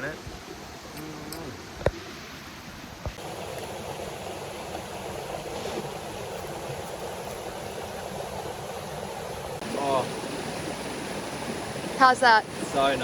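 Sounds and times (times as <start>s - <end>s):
stream rushing at a waterfall: 0.0s - 13.0s.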